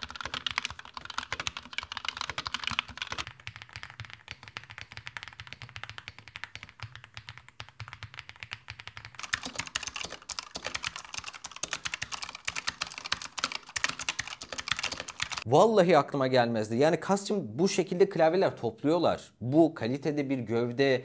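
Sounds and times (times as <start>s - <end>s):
mechanical keyboard typing: 0.0s - 15.4s.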